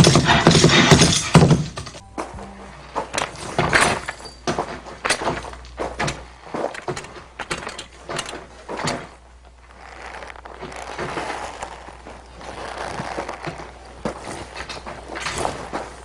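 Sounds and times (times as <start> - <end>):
sharp knocks and clacks: 0.0 - 9.1.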